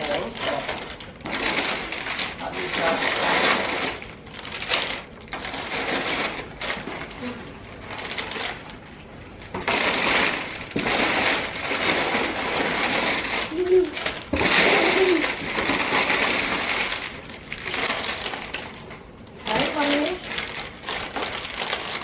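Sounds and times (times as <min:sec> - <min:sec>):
plastic wrappers crinkling: 0:00.0 - 0:22.0
short pitched child-like voice: 0:13.5 - 0:14.0.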